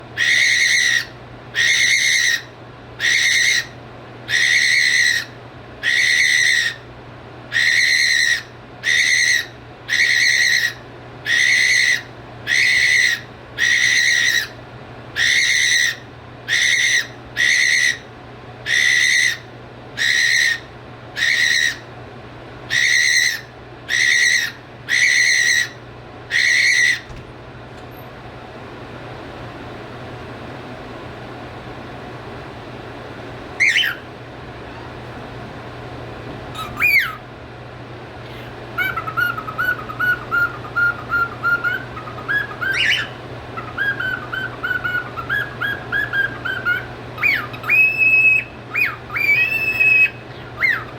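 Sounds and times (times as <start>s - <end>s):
cockatiel calling: 0.2s - 6.9s, 7.5s - 14.6s, 15.2s - 21.9s, 22.7s - 27.2s, 33.6s - 34.1s, 36.6s - 37.3s, 38.3s - 50.9s.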